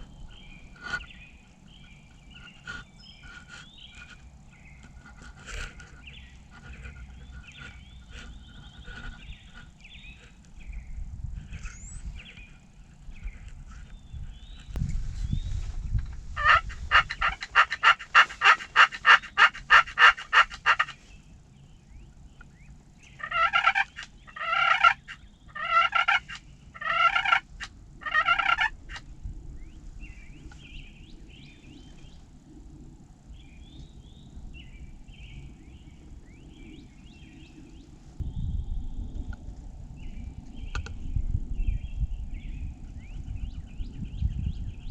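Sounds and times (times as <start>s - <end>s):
faint songbird chirps: 0.0s - 15.9s, 33.3s - 44.9s
turkey yelps: 16.4s - 21.0s, 23.2s - 29.0s
turkey gobbles: 16.4s - 21.1s, 23.2s - 29.1s.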